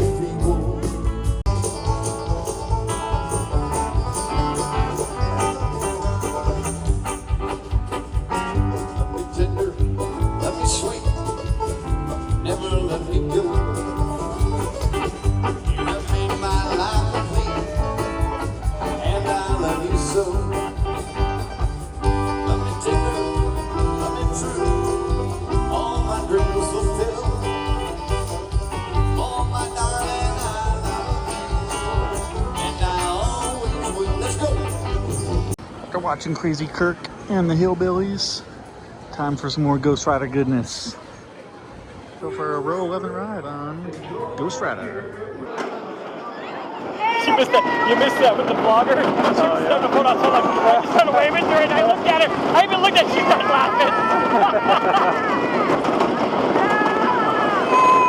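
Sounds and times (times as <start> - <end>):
banjo: 0.0 - 35.6
bluegrass band playing: 0.0 - 35.7, 47.0 - 58.0
guitar: 0.0 - 39.0, 47.0 - 58.0.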